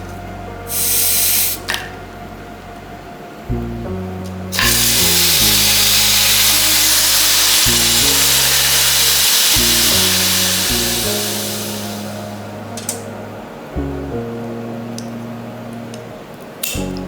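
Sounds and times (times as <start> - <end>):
background music with bass line: 0.0 - 17.0
hot metal hissing on ice: 0.7 - 1.6, 4.6 - 12.2.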